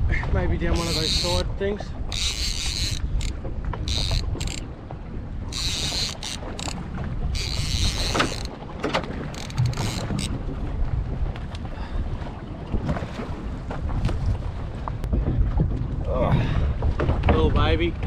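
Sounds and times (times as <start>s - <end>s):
low rumble of boat: 0.0s - 18.0s
wind buffeting microphone: 0.0s - 18.0s.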